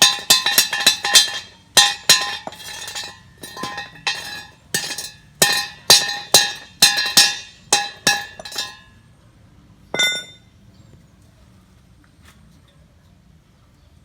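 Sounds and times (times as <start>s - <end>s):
hammer striking steel: 0.0s - 8.9s, 10.0s - 10.4s.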